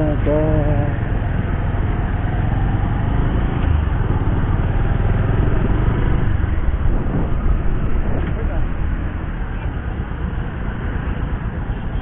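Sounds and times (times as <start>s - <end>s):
motorcycle engine running: 0.0s - 12.0s
wind noise on microphone: 3.0s - 10.3s.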